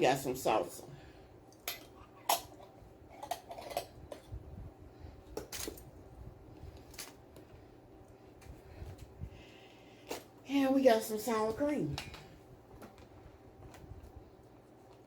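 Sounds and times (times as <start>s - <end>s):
utensil clinking against dishes: 1.6s - 4.4s.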